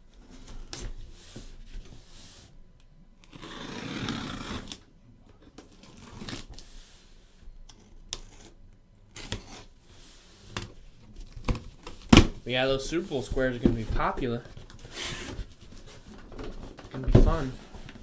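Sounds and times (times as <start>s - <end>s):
taps and knocks of handling: 10.6s - 18.0s
cardboard case ripping: 11.3s - 18.0s.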